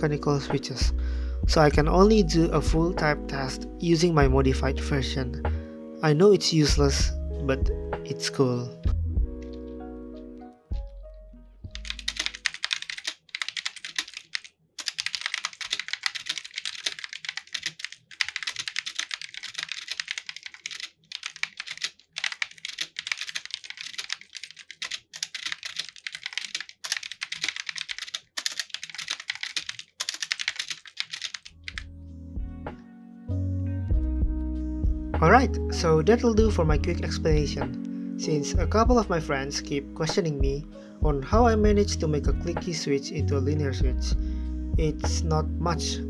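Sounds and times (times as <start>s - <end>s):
fast typing on mechanical keyboard: 11.8s - 31.8s.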